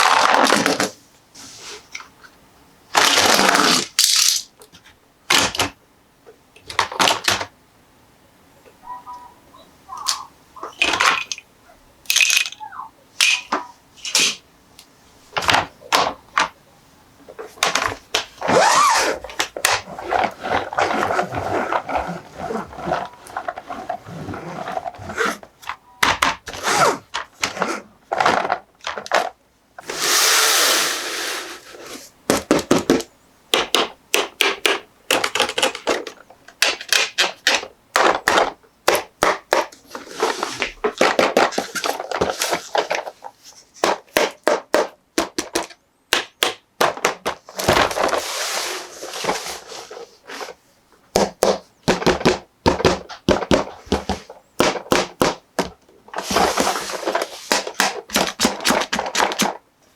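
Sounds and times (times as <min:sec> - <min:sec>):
plastic toys handled: 0:03.0 - 0:05.8, 0:09.9 - 0:16.6, 0:17.2 - 0:33.7, 0:34.4 - 0:45.8, 0:46.8 - 0:59.6
rustling packaging: 0:17.3 - 0:32.1, 0:39.2 - 0:44.5, 0:47.3 - 0:50.6, 0:51.2 - 0:59.6.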